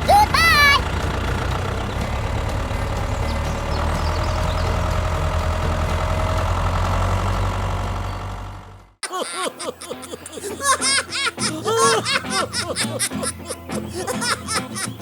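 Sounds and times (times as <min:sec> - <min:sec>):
engine running: 0:00.0 - 0:09.0.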